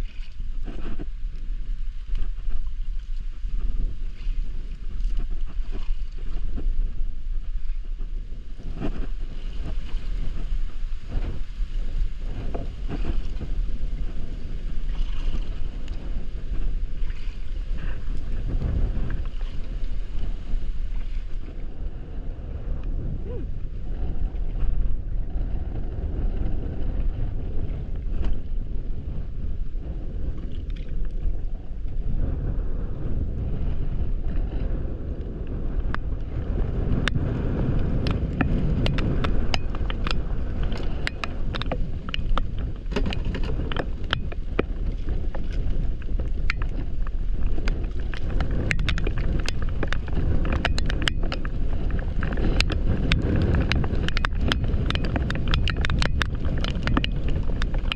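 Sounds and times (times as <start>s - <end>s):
wind buffeting microphone: 0.0s - 57.9s
sharp ticks and taps: 52.6s - 57.9s.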